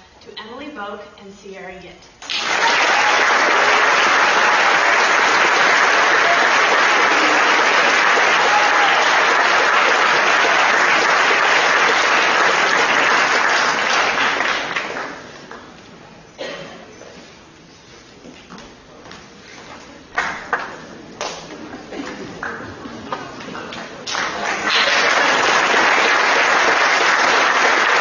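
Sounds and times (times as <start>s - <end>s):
audience applauding: 2.2s - 15.6s, 22.1s - 28.0s.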